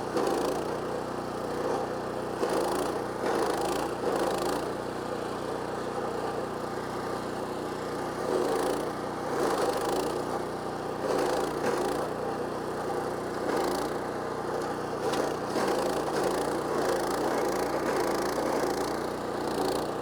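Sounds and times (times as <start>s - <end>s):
engine running at speed: 0.0s - 20.0s
cutting wheel grinding wood stump: 7.7s - 20.0s.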